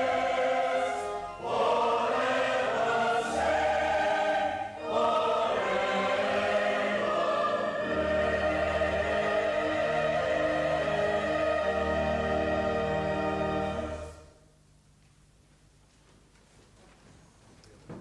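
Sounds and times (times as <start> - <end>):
choir singing: 0.0 - 14.3.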